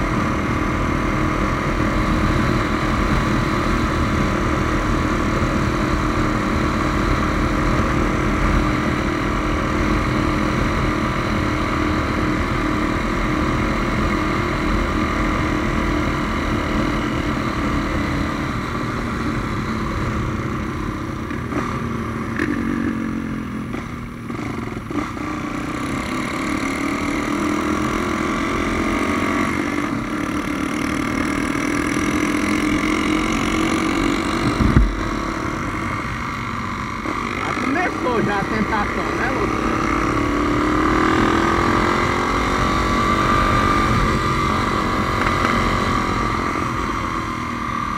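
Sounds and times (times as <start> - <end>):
motorcycle engine running: 0.0 - 47.9.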